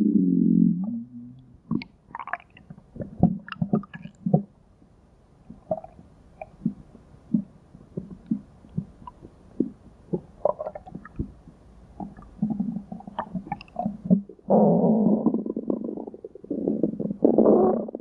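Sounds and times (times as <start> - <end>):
cartoon stomach growling: 0.0 - 1.8, 12.0 - 18.0.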